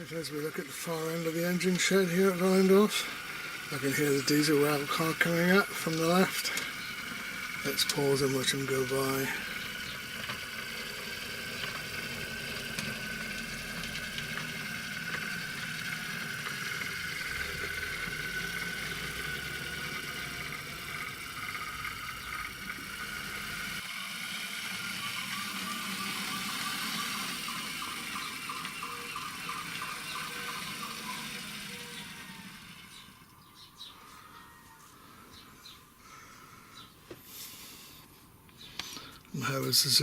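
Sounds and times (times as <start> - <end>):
wheels rattling on track: 0.0 - 33.3
small electric motor whine: 0.0 - 38.0.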